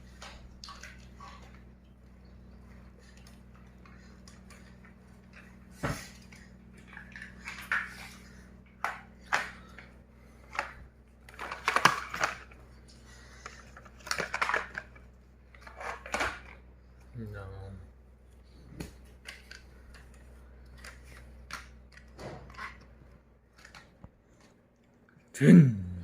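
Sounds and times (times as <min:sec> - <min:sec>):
faint steady hum: 0:00.0 - 0:26.0
plastic pieces clicking and clattering: 0:10.5 - 0:12.6, 0:13.4 - 0:16.6.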